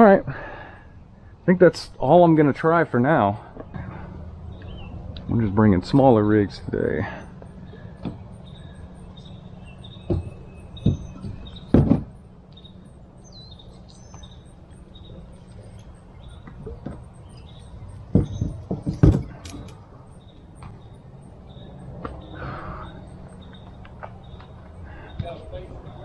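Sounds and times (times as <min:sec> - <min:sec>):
knocks and clunks of gear: 0:15.7 - 0:19.8.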